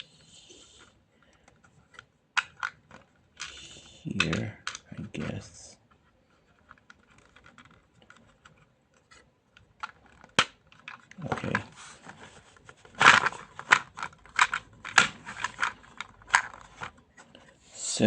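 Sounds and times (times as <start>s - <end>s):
plastic toy pieces clicking: 2.4s - 4.9s, 13.0s - 16.9s
plastic rustling scrapes: 10.0s - 17.6s.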